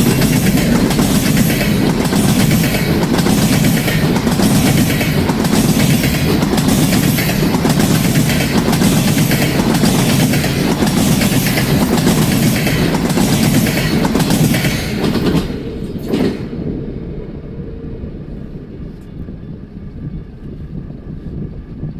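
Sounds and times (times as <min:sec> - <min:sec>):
train wheels clicking over rail joints: 0:00.0 - 0:16.9
faint train rumble: 0:00.0 - 0:21.9.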